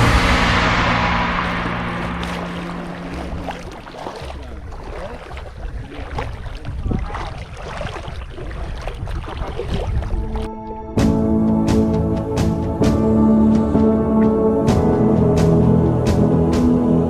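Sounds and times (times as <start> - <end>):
water splashing and rushing: 0.0 - 13.1
boat low rumble: 0.0 - 17.0.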